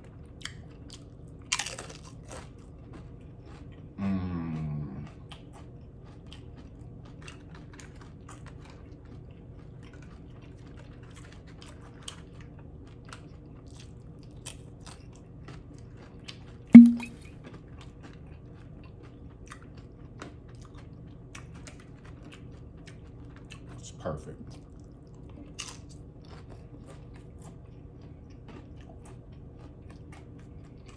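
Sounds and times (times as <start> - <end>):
chewing and crunching food: 0.0 - 16.7, 17.4 - 30.9
mouth clicks: 16.8 - 17.2.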